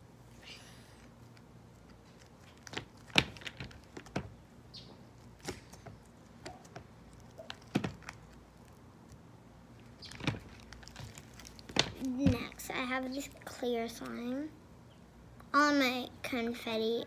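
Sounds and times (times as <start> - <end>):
slime squishing in plastic container: 9.8 - 12.6.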